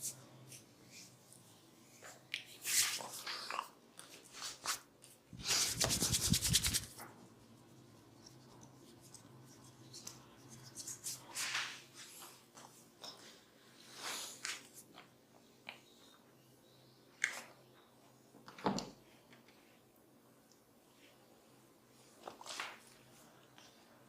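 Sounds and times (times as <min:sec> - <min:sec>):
hands rubbing skin: 0:05.4 - 0:07.0.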